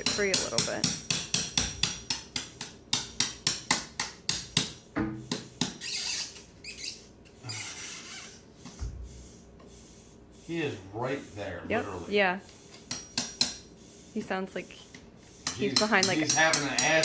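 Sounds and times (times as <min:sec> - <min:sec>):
hammer tapping plaster wall: 0:00.0 - 0:05.8, 0:15.4 - 0:17.0.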